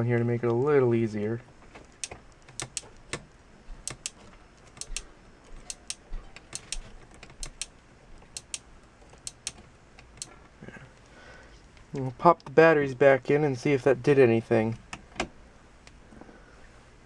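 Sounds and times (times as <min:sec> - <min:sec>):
radio knob clicking: 0:01.8 - 0:10.4.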